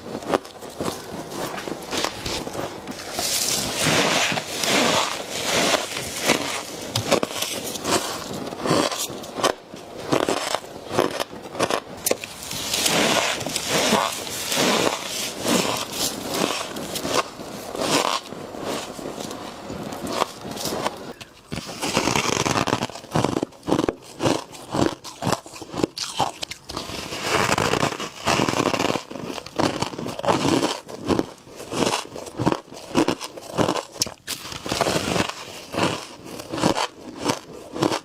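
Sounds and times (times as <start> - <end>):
scraping: 0.1 - 25.8
frost crunching when chewed: 4.6 - 18.3, 19.2 - 27.0, 27.6 - 38.0.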